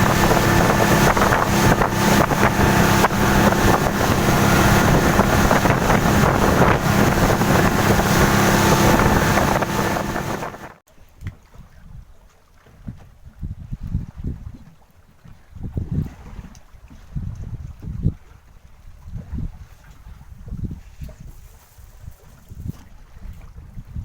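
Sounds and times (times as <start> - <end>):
boat engine hum: 0.0 - 10.8
water rushing: 0.0 - 10.8
wind on microphone: 0.0 - 10.8, 13.0 - 14.6, 15.4 - 24.0.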